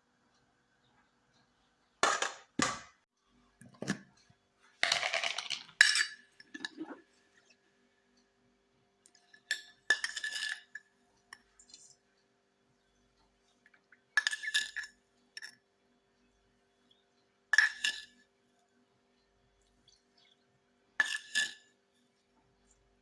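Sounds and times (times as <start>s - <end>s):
glass jars clinking: 4.9s - 7.0s, 9.3s - 11.4s, 14.2s - 15.5s, 17.6s - 18.2s, 21.0s - 21.6s.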